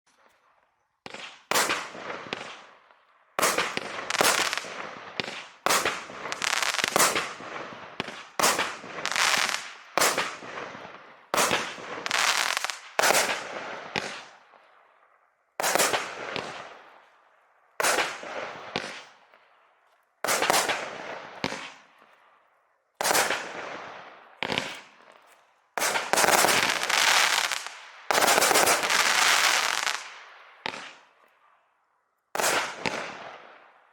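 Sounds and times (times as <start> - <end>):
fireworks bangs: 3.4 - 14.5, 15.6 - 16.9, 17.8 - 19.2, 20.2 - 22.0, 23.0 - 31.0, 32.3 - 33.7.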